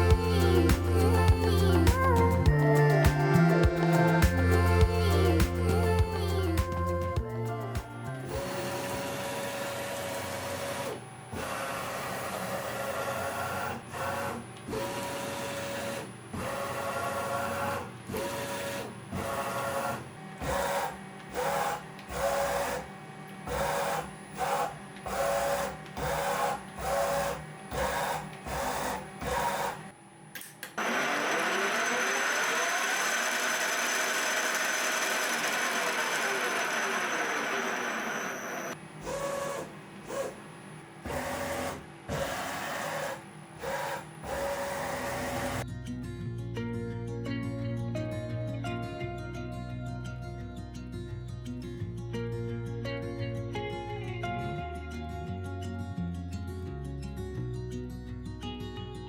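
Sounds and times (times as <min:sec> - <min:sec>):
continuous machine whir: 0:00.0 - 0:45.6
machine motors whining: 0:00.0 - 0:45.6.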